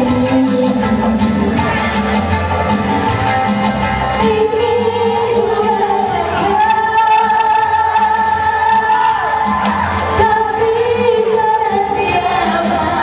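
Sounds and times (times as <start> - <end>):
pop music with singing: 0.0 - 13.0.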